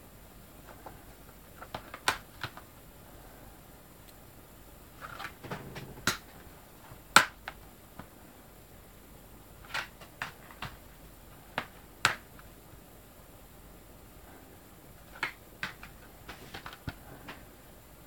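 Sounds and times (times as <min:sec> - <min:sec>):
plastic cases clicking and tapping: 0:01.6 - 0:02.7, 0:05.0 - 0:06.4, 0:09.7 - 0:10.8, 0:11.5 - 0:12.3, 0:15.1 - 0:17.4.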